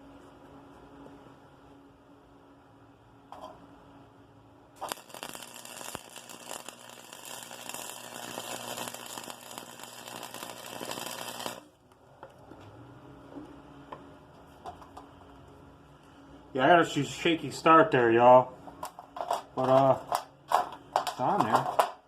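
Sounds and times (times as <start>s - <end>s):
faint steady hum: 0.0s - 21.2s
welding arc crackling: 4.8s - 11.9s.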